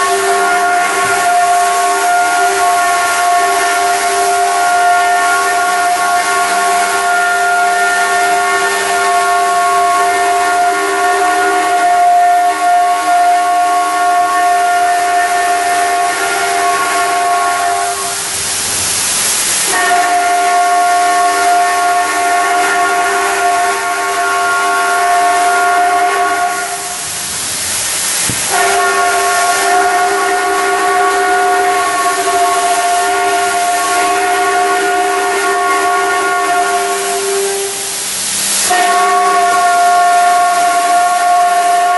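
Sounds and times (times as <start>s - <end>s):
loud hissing rush: 0.0s - 41.9s.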